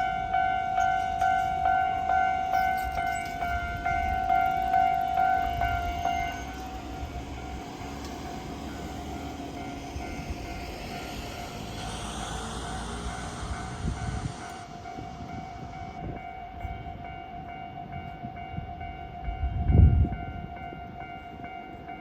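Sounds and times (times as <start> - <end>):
railroad crossing bell ringing: 0.0 - 22.0.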